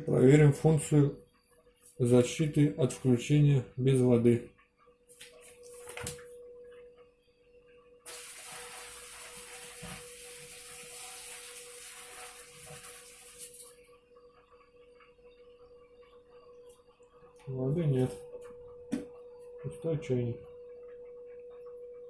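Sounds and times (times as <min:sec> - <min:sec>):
water pouring into a sink: 0:08.1 - 0:13.8.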